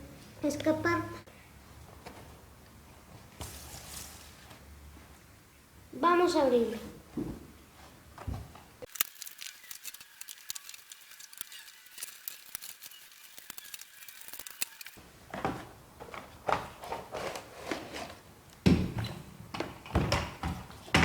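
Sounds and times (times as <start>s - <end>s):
packaging crackling and clicking: 8.9s - 15.0s
packaging rustling: 8.9s - 18.2s.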